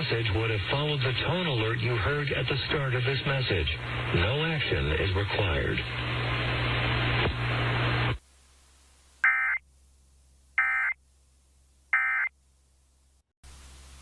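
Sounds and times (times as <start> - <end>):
loud broadcast hiss: 0.0 - 9.2, 13.4 - 14.0.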